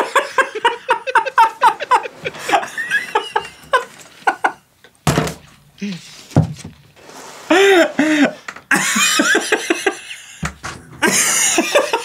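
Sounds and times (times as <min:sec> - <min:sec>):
men laughing hard: 0:00.0 - 0:04.7, 0:07.5 - 0:12.0.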